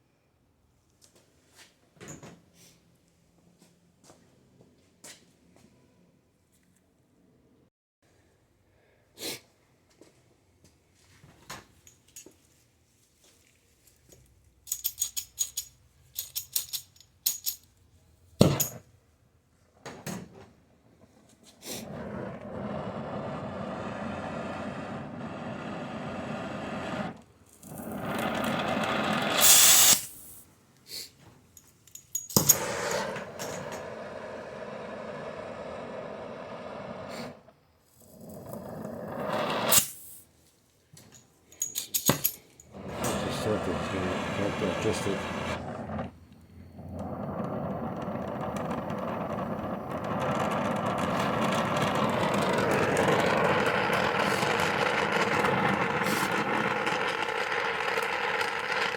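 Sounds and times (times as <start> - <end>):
metal tools clinking: 14.7 - 17.8, 31.6 - 32.6, 41.0 - 42.7
heating tool hissing: 21.8 - 30.2, 32.5 - 37.5, 39.0 - 40.1, 42.8 - 46.2.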